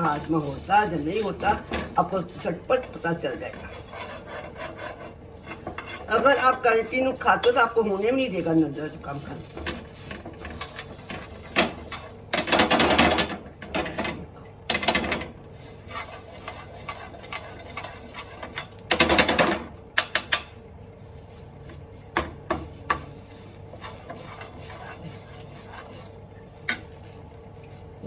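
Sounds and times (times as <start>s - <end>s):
spoon scraping in frying pan: 0.0s - 12.5s, 15.6s - 18.8s, 21.8s - 28.0s.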